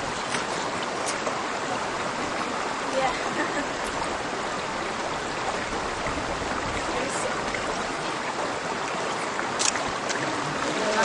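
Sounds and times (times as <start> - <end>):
stream water flowing: 0.0 - 11.0.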